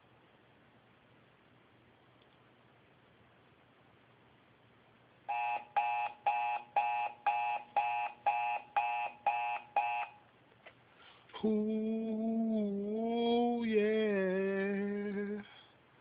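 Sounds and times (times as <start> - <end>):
alarm clock beeping: 5.3 - 10.2.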